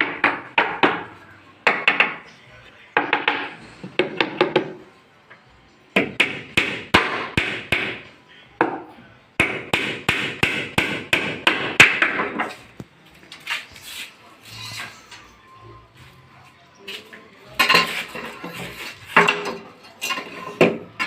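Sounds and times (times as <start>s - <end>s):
hammer striking wood: 0.0s - 1.1s, 1.7s - 2.2s, 3.0s - 4.8s, 6.0s - 8.0s, 9.4s - 12.5s.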